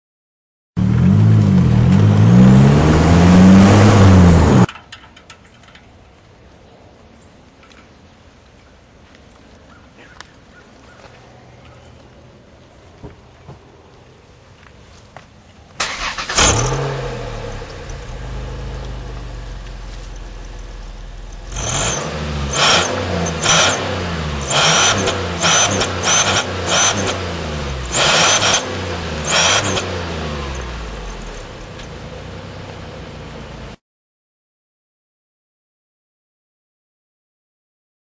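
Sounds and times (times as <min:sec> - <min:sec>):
car engine starting and idling: 0:00.8 - 0:04.7, 0:15.8 - 0:33.8
engine revving: 0:00.8 - 0:04.7, 0:15.8 - 0:32.6.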